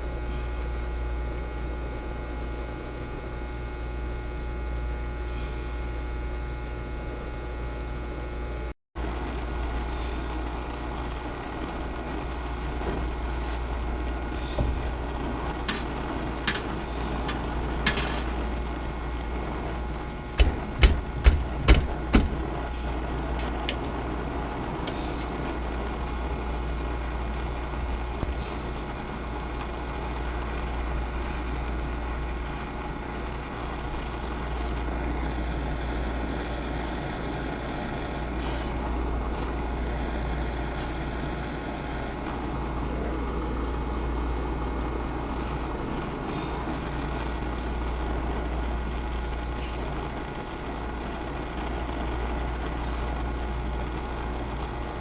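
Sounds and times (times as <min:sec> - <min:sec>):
low machinery hum: 0:00.0 - 0:55.0
sharp knocks: 0:20.4 - 0:22.4.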